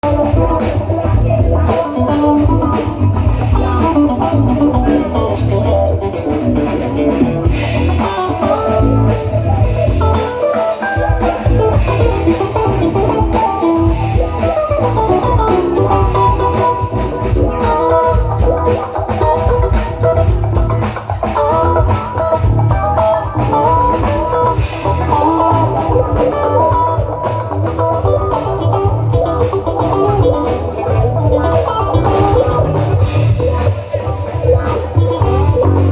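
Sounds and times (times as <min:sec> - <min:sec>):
bass guitar line: 0:00.0 - 0:35.9
quick guitar melody: 0:00.0 - 0:35.9.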